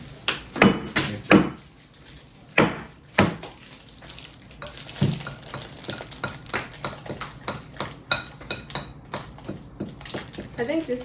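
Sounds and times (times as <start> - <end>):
spoon clinking in mixing bowl: 5.9 - 10.2.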